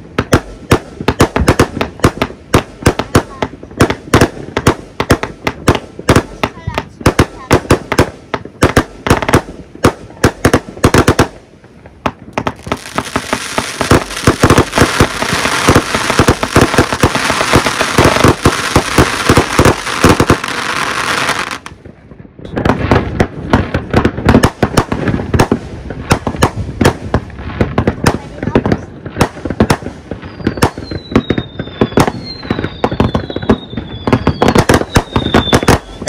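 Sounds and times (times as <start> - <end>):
fireworks hissing crackle: 10.1 - 36.0
firecracker bangs: 12.1 - 21.8.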